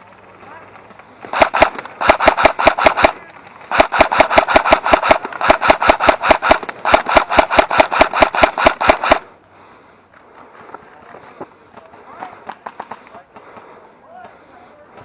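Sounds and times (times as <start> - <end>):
airsoft rifle rapid shots: 1.2 - 9.3.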